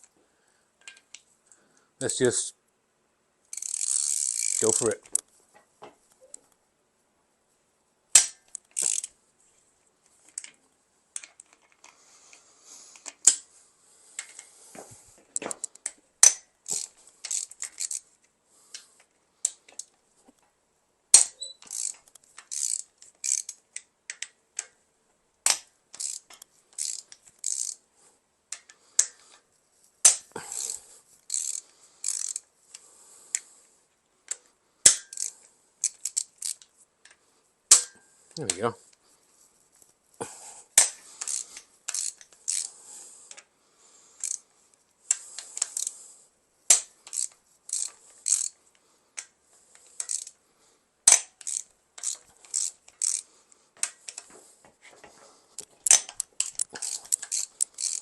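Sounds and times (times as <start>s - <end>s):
ratchet wrench clicking: 3.5s - 5.2s, 8.2s - 9.1s, 15.6s - 18.0s, 21.2s - 24.7s, 25.5s - 27.8s, 30.1s - 32.4s, 34.9s - 36.6s, 40.8s - 43.4s, 44.2s - 44.4s, 45.1s - 46.0s, 46.7s - 48.6s, 49.8s - 50.4s, 51.1s - 54.3s, 55.8s - 58.0s
sharp cracks: 8.1s - 9.1s, 21.1s - 23.6s, 30.0s - 32.4s, 40.7s - 42.7s, 46.7s - 48.5s, 51.1s - 53.2s.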